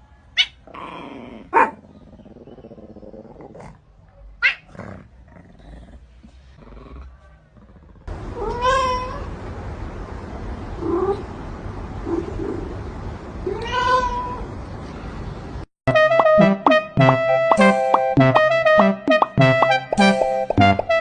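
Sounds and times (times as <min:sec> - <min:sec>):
cat meowing: 0:08.4 - 0:09.3, 0:13.5 - 0:14.5.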